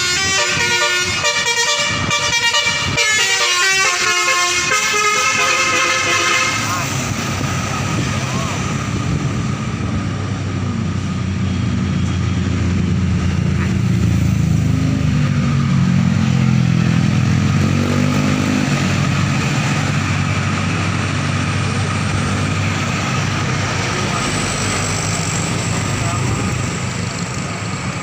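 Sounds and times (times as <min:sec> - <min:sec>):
bus horn playing melody: 0:00.0 - 0:07.0
bus engine running: 0:00.0 - 0:28.0.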